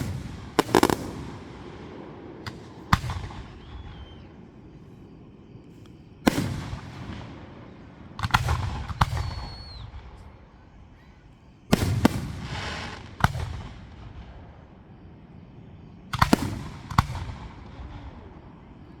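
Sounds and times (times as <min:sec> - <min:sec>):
fireworks booming: 0:00.0 - 0:04.5, 0:06.2 - 0:10.5, 0:11.7 - 0:14.7, 0:16.1 - 0:19.0.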